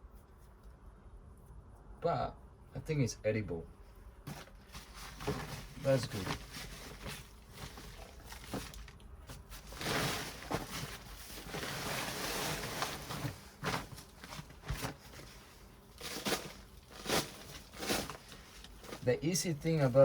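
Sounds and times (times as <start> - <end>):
hands rustling through potting mix: 4.2 - 20.0.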